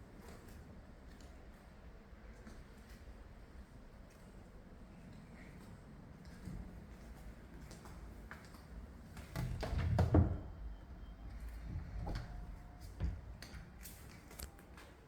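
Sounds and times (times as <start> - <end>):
door rattling and knocking: 9.4 - 10.6.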